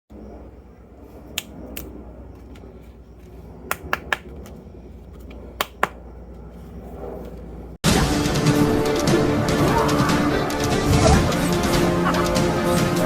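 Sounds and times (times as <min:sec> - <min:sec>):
sharp clicks: 0:03.7 - 0:04.6, 0:05.2 - 0:06.0.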